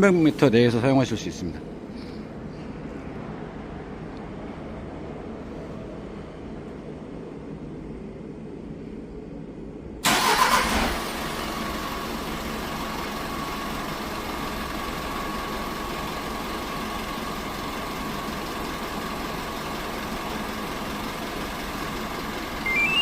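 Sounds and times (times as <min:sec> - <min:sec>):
diesel truck engine starting and idling: 0:10.0 - 0:23.0.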